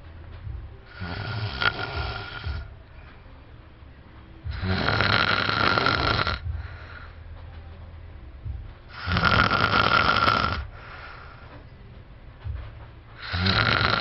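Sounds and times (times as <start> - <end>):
man snoring loudly: 0.9 - 2.7, 4.5 - 6.5, 8.9 - 10.7, 13.2 - 14.0
quiet breath: 6.4 - 7.6, 10.6 - 11.9.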